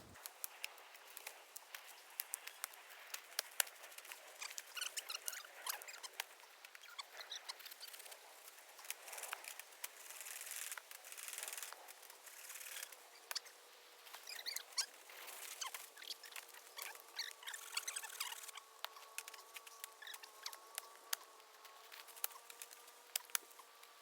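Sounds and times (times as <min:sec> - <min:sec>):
dry leaves and twigs rustling: 0:00.0 - 0:24.0.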